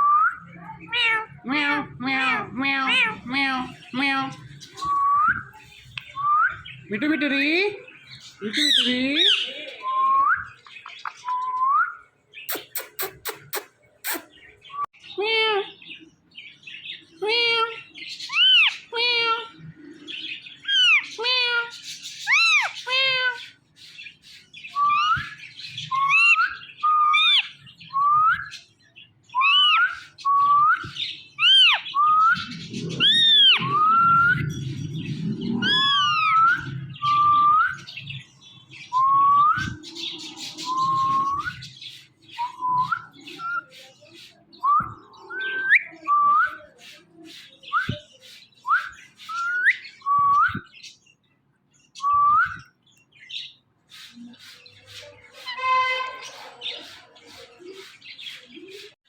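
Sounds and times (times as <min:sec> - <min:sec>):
parrot whistled calls: 0:24.7 - 0:28.5, 0:29.4 - 0:34.6, 0:35.6 - 0:37.9.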